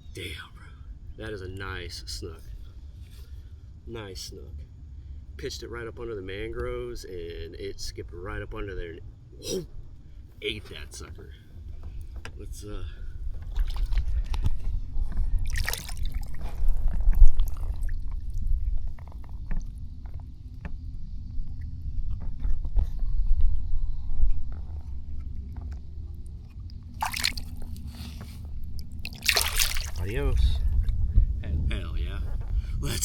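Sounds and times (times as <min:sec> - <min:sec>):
steady low rumble: 0:00.0 - 0:33.0
water sloshing and splashing: 0:13.3 - 0:14.4, 0:15.0 - 0:19.8, 0:26.9 - 0:30.2.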